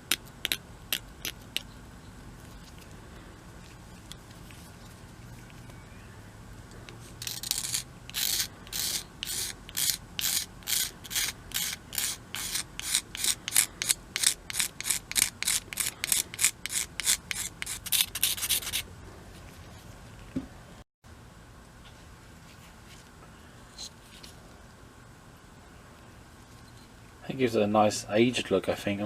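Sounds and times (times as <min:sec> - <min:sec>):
blade scraping wood: 0:06.9 - 0:18.8.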